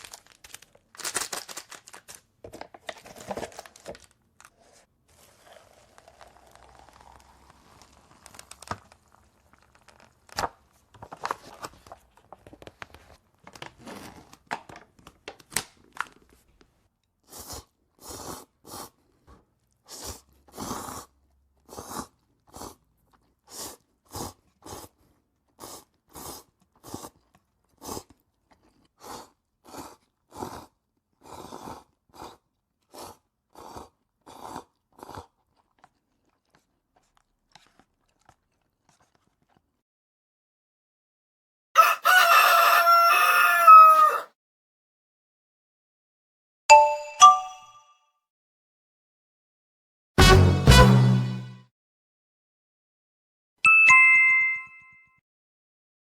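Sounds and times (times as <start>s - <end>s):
crunchy food being chewed: 3.1s - 10.7s, 17.2s - 39.8s.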